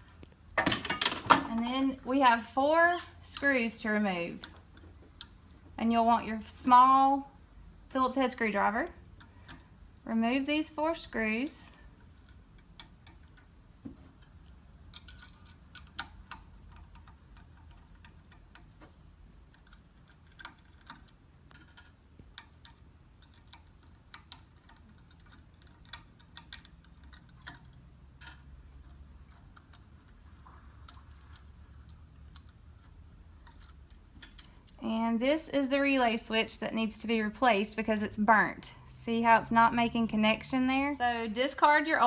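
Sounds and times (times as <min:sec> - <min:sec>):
small metal parts handled: 0:19.5 - 0:34.8.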